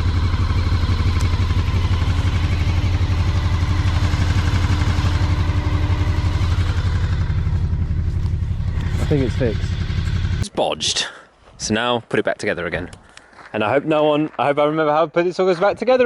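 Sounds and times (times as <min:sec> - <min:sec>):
motorcycle engine idling: 0:00.0 - 0:10.4.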